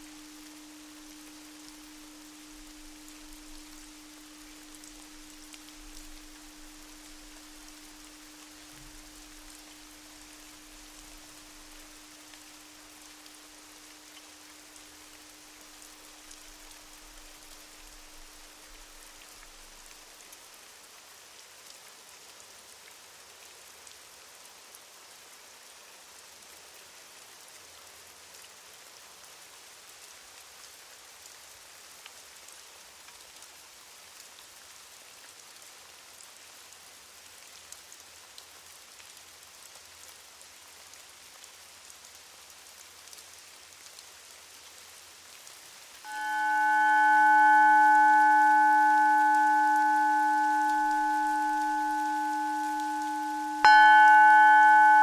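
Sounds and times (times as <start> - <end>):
singing bowl hum: 0.0 - 19.6, 46.1 - 55.0
faint rain: 0.0 - 55.0.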